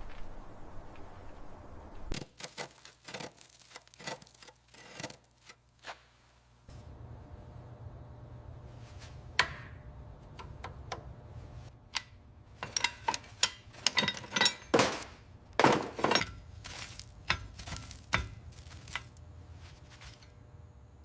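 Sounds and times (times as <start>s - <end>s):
steady low hum: 5.7s - 21.0s
metal tools clinking and knocking: 12.0s - 19.2s.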